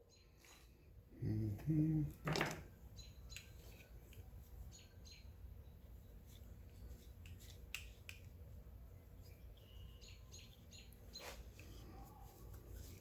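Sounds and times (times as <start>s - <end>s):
birds chirping: 2.9s - 3.9s, 4.6s - 6.2s, 8.9s - 12.3s.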